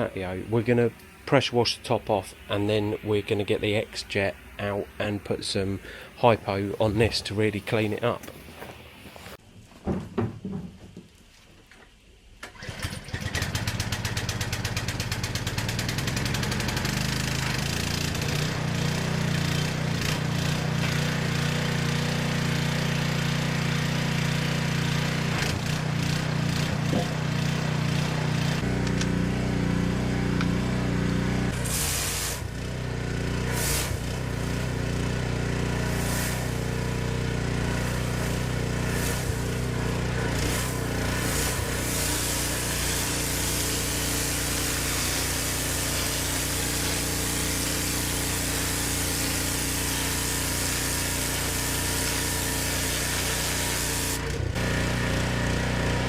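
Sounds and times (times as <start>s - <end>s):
pressure washer running: 12.6s - 56.0s.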